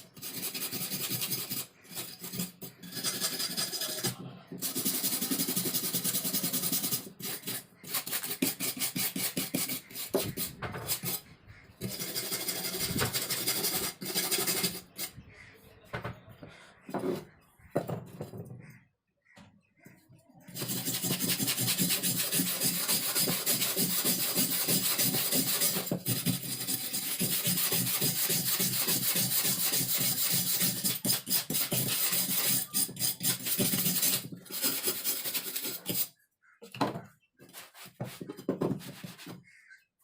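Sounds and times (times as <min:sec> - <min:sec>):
abrasive rubbing on metal knife: 0:00.1 - 0:15.5, 0:20.5 - 0:36.2.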